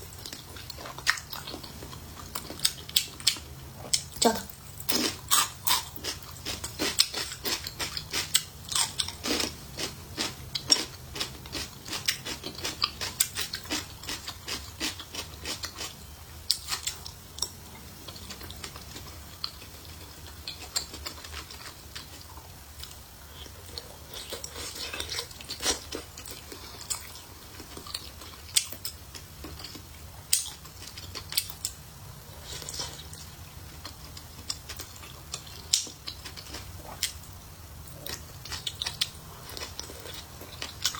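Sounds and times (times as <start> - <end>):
chewing and biting food: 0.2 - 31.8, 32.4 - 40.9.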